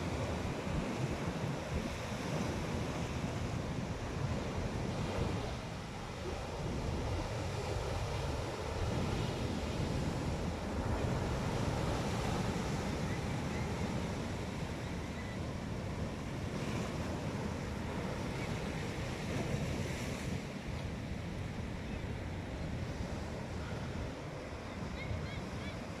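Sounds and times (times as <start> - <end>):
sea waves on shore: 0.0 - 26.0.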